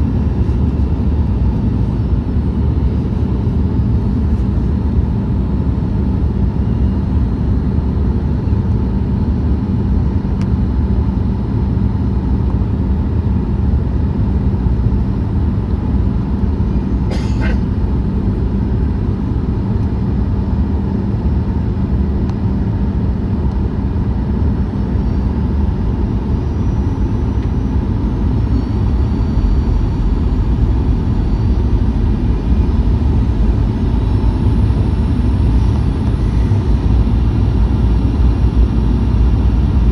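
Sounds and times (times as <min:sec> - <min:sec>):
airplane cabin rumble: 0:00.0 - 0:39.9.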